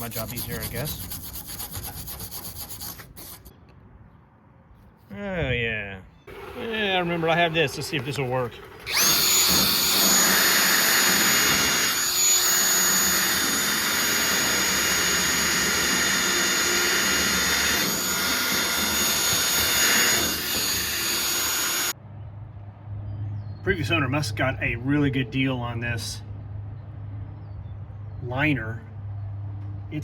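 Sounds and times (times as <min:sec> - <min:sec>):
power tool motor whining: 0:06.3 - 0:22.0.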